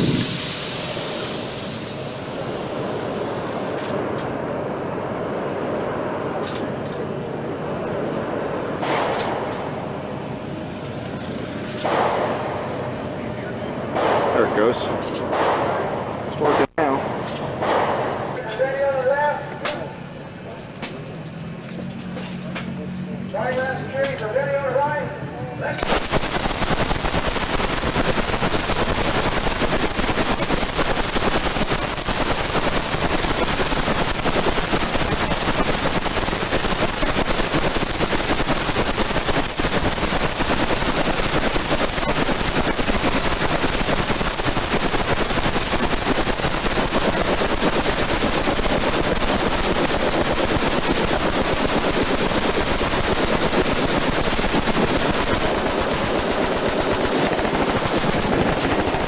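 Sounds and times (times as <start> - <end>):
machine guns firing: 11.8 - 12.7, 25.8 - 59.0.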